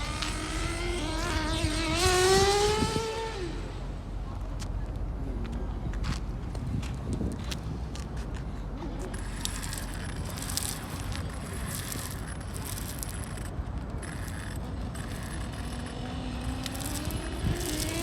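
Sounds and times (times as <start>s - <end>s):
electric motor whine: 0.0s - 3.8s, 9.2s - 18.0s
outdoor background noise: 0.0s - 18.0s.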